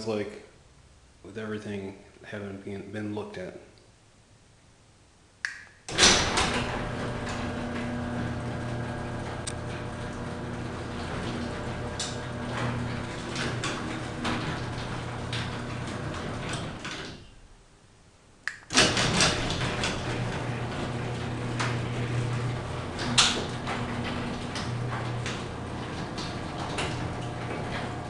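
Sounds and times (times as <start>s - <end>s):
garage door opener motor humming: 5.9s - 17.2s, 18.7s - 28.0s
garage door rattling and clicking: 5.9s - 17.3s, 18.7s - 28.0s.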